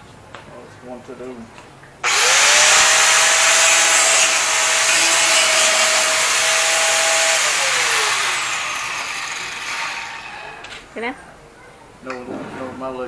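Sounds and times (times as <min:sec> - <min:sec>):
angle grinder grinding metal: 0:02.0 - 0:10.8.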